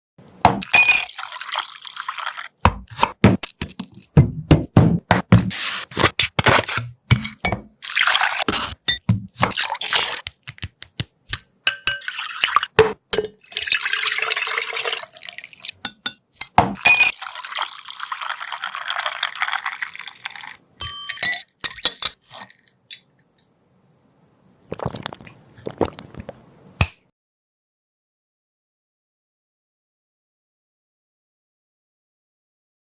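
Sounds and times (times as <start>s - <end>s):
glassware and utensils clinking: 0.6s - 1.4s, 7.1s - 7.8s, 8.4s - 9.6s, 11.6s - 17.3s, 20.3s - 23.5s
liquid pouring and splashing: 0.7s - 2.6s, 7.8s - 10.6s, 11.9s - 15.8s, 16.8s - 20.6s, 24.7s - 26.4s.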